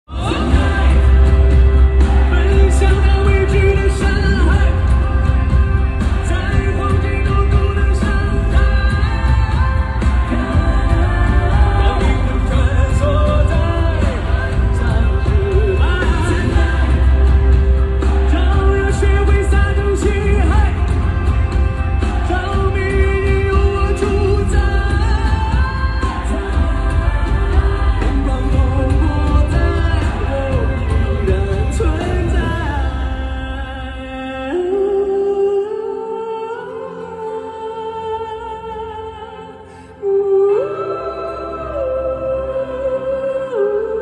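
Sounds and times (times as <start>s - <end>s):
man singing: 0.0s - 44.0s
loud rock band with heavy bass: 0.1s - 34.8s
soft backing music: 0.1s - 44.0s.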